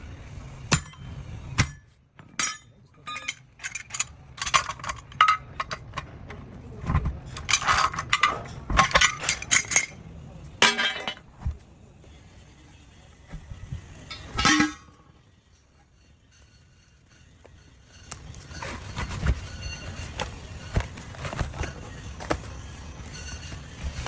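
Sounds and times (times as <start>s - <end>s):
hand tools clinking on steel: 0.7s - 11.3s, 13.3s - 19.1s.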